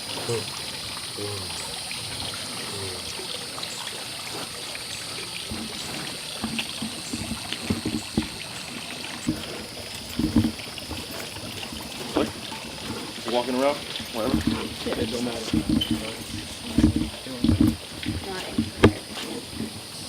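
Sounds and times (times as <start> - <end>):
water trickling: 0.0 - 20.0
soft knocks and thumps: 5.2 - 20.0.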